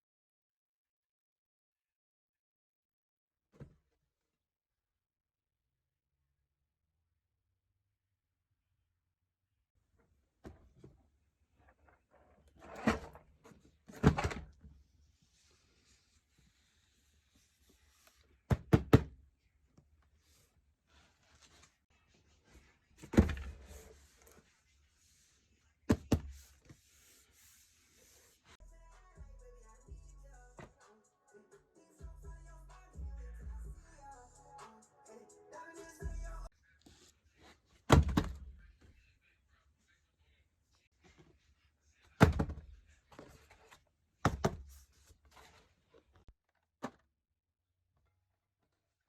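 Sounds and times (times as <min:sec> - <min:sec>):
hard objects thunking down: 0:23.0 - 0:23.8, 0:42.2 - 0:42.7
music: 0:28.6 - 0:37.5.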